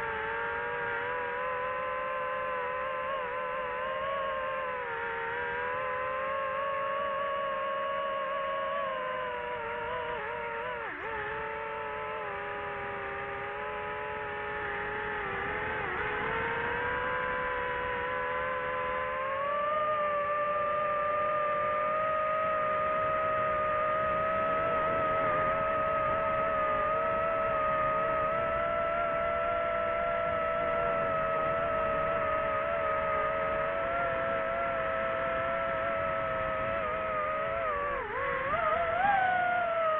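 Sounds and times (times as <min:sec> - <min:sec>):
drone propellers whining: 0:00.0 - 0:39.9.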